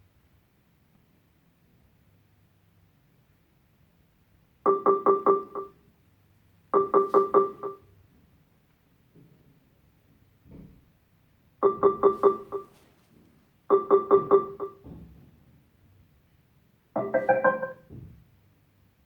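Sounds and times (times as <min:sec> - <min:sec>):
speaker piano-like chimes: 0:06.8 - 0:07.8, 0:11.6 - 0:12.8, 0:13.7 - 0:14.8, 0:17.0 - 0:17.9.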